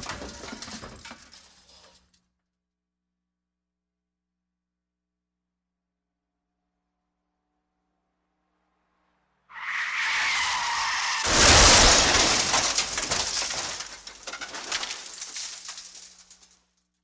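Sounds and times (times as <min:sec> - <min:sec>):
debris and metal clattering: 0:00.0 - 0:02.2, 0:10.4 - 0:16.6
car tyres screeching: 0:09.5 - 0:12.5
loud crash of impact: 0:10.4 - 0:16.3.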